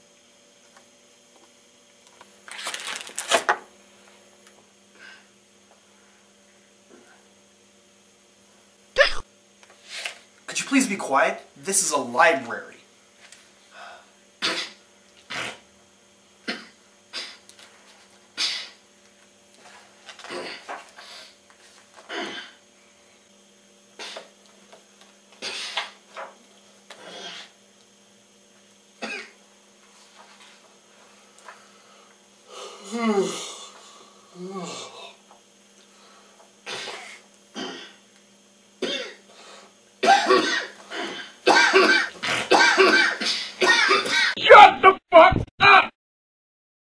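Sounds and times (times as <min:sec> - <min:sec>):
person coughing: 0:09.0 - 0:09.2, 0:16.5 - 0:17.4, 0:22.1 - 0:22.6, 0:29.0 - 0:29.4, 0:36.7 - 0:38.0, 0:38.8 - 0:39.2, 0:40.0 - 0:45.5
person sneezing: 0:09.0 - 0:09.2, 0:13.8 - 0:15.6, 0:16.5 - 0:17.4, 0:18.4 - 0:18.8, 0:20.2 - 0:21.3, 0:22.1 - 0:22.6, 0:24.0 - 0:24.3, 0:25.4 - 0:25.9, 0:36.7 - 0:38.0, 0:40.0 - 0:45.9.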